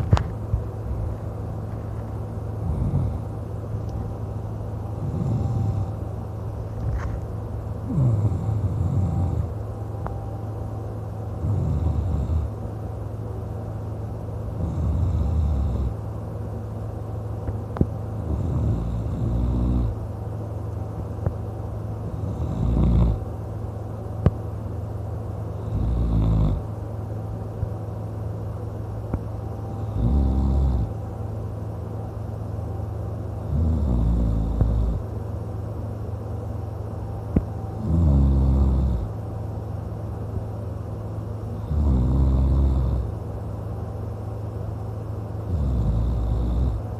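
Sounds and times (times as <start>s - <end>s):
steady low hum: 0.0s - 46.9s
man snoring: 2.6s - 3.4s, 5.0s - 6.0s, 7.8s - 9.6s, 11.4s - 12.6s, 14.5s - 16.0s, 18.2s - 20.0s, 22.0s - 23.3s, 25.5s - 26.7s, 29.6s - 31.0s, 33.4s - 35.1s, 37.8s - 39.2s, 41.5s - 43.1s, 45.4s - 46.9s.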